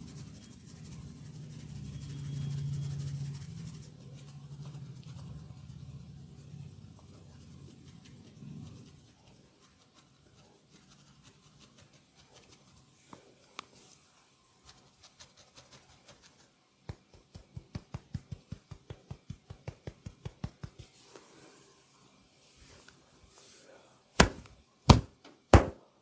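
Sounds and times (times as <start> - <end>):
hands rubbing skin and hair: 7.0 - 14.1, 14.7 - 21.4
hands tapping on body: 16.8 - 20.9, 24.2 - 25.8.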